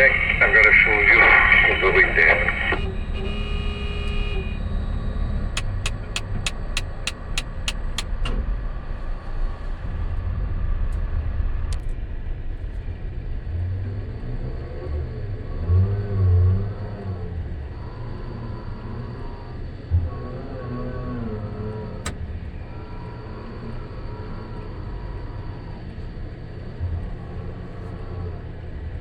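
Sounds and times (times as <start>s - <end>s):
machinery rumbling: 0.0s - 29.0s
sharp evenly spaced clicks: 5.5s - 8.2s.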